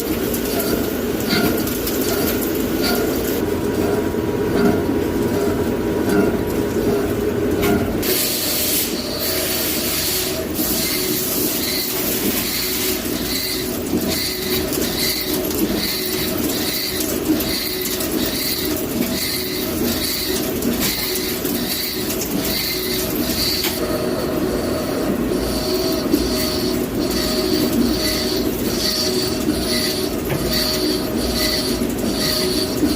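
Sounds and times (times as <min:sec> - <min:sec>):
lathe machine hum: 0:00.0 - 0:32.9
pulsing high-pitched tone: 0:22.6 - 0:32.9.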